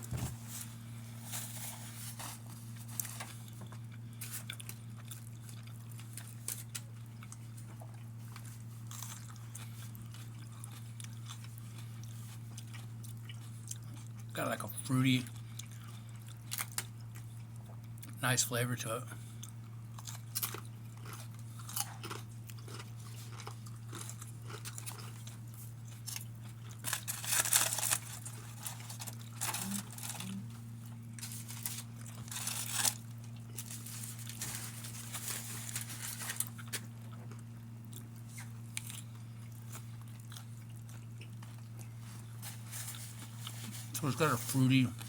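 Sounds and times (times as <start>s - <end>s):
steady low hum: 0.0s - 45.0s
person chewing and crunching: 0.7s - 18.3s, 19.0s - 45.0s.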